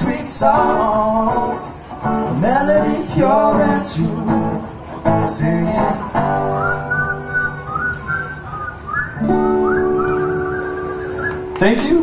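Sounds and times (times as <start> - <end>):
acoustic guitar chords strummed: 0.0 - 8.5, 9.2 - 12.0
whistled melody: 6.2 - 11.6.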